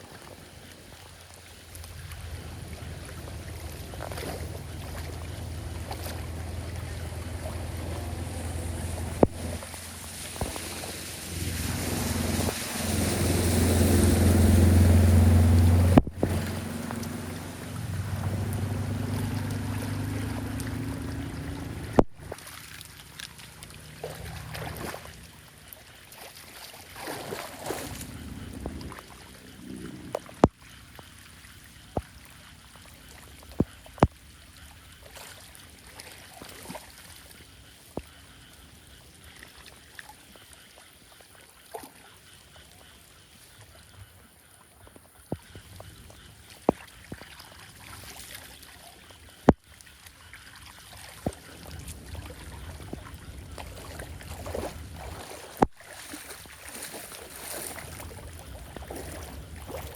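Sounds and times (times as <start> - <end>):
water trickling: 0.0 - 59.9
water rushing into drain: 0.9 - 31.3, 45.4 - 59.9.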